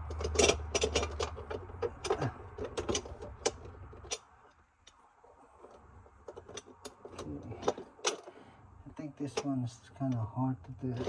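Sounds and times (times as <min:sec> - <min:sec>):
small clicks and knocks: 0:00.0 - 0:05.0, 0:05.6 - 0:08.4.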